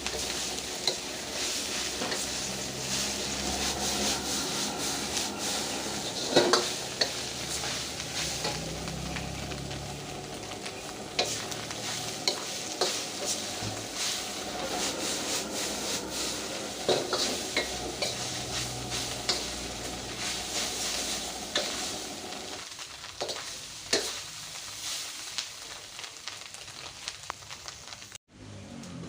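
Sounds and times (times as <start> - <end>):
noodles sizzling in a pan: 0.0 - 28.2.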